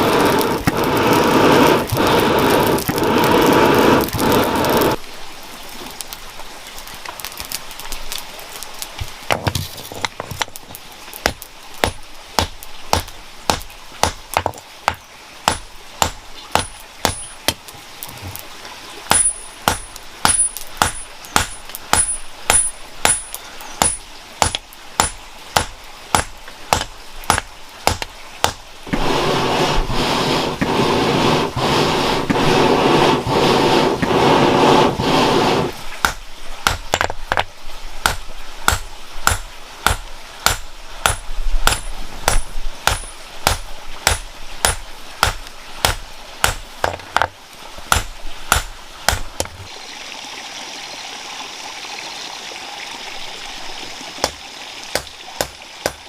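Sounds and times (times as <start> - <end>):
steady rasping noise: 0.0 - 5.0, 28.4 - 36.9
hammer striking metal: 15.5 - 17.4, 19.1 - 28.6, 38.1 - 47.0.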